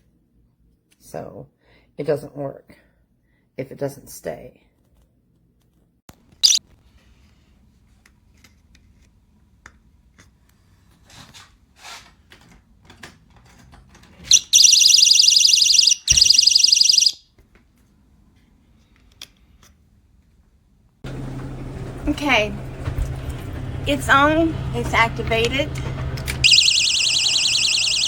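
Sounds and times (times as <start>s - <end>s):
shrill pulsing alarm: 14.3s - 17.2s, 26.4s - 28.0s.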